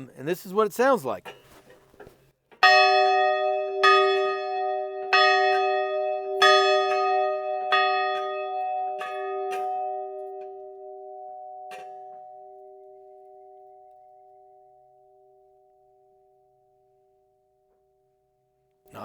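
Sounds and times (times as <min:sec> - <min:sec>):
church bell ringing: 0:02.6 - 0:17.4.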